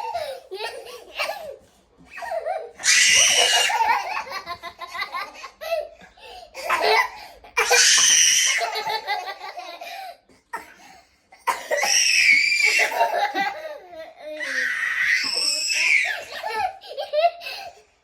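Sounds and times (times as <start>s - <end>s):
small children laughing: 0.0s - 10.2s, 11.7s - 17.8s
shrill screams: 2.8s - 3.9s, 7.6s - 8.8s, 11.7s - 13.2s, 14.4s - 16.4s.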